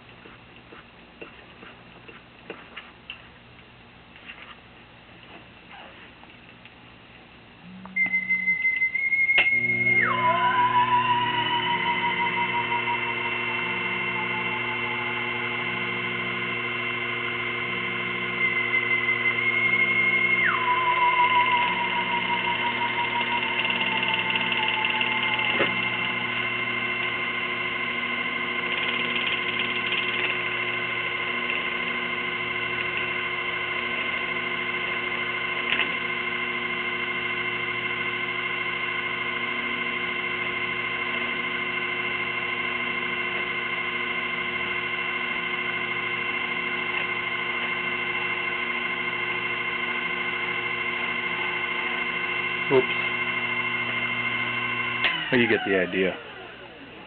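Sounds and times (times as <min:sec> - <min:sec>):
lathe motor whine: 0:07.6 - 0:57.0.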